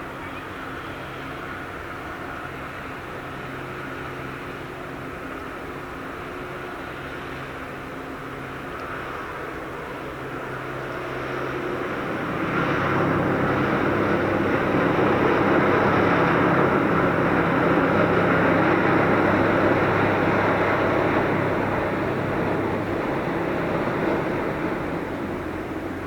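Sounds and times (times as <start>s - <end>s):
churning propeller wash: 0.0s - 26.0s
ship engines humming: 0.0s - 26.0s.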